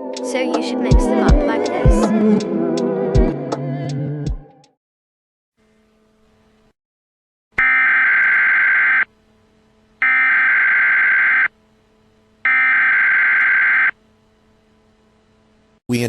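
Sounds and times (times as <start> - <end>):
harsh digital data tones: 7.6 - 9.1, 10.0 - 11.5, 12.5 - 14.0.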